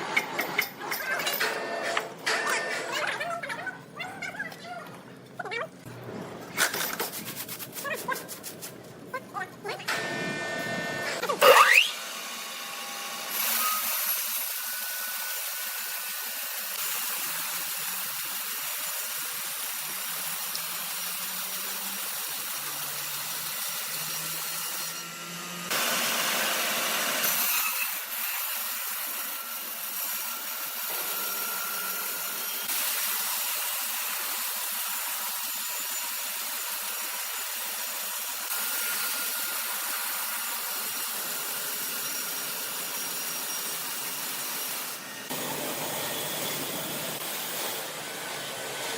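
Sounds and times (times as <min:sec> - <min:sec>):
power saw cutting wood: 0:09.9 - 0:48.9.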